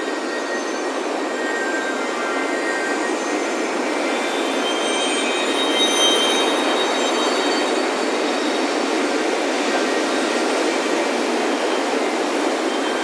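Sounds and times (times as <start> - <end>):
faint wind chimes ringing: 0.0 - 13.0
ocean surf washing onto beach: 6.5 - 13.0.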